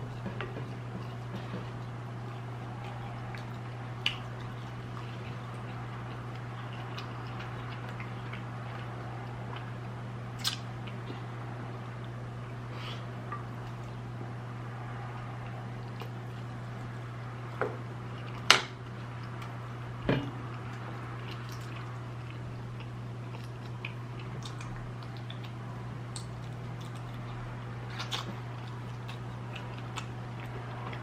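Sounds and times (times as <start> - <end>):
wet chewing: 0.0 - 11.3, 20.4 - 31.0
steady low hum: 0.0 - 31.0.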